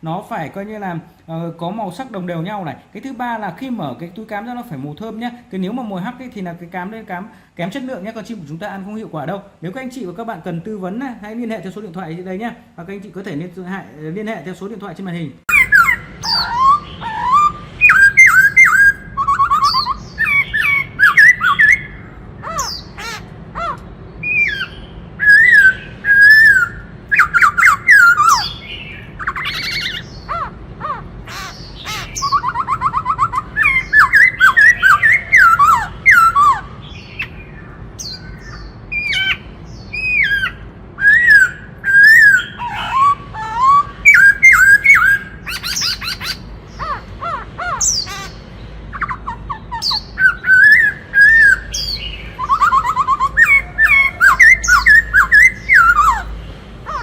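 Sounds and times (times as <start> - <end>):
bird singing whistled phrases: 15.5 - 30.5, 31.3 - 56.3.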